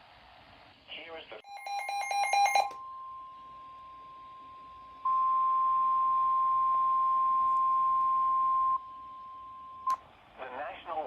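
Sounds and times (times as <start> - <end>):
high steady alarm beep: 1.4 - 3.7.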